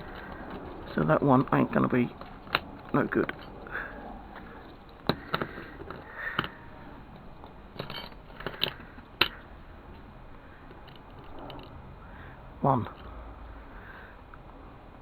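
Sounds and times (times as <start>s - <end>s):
sharp metallic clicks and knocks: 0.0s - 11.8s.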